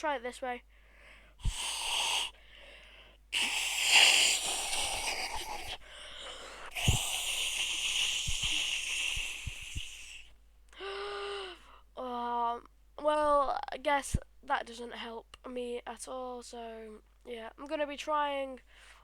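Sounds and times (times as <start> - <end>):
breathy rushes of air into hands: 3.4 - 10.3.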